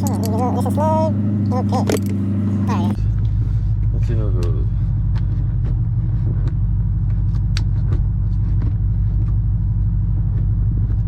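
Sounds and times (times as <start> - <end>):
car engine idling: 0.0 - 11.0
gear shifter clicks and knocks: 1.7 - 2.2, 4.3 - 11.0.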